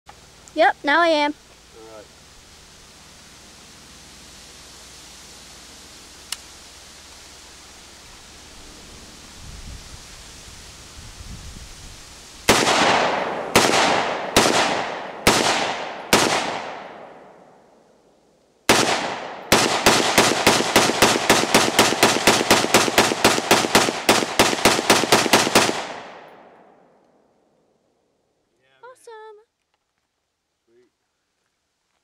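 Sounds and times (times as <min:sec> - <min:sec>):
rifle shots echoing: 0:12.5 - 0:17.6, 0:18.7 - 0:26.8.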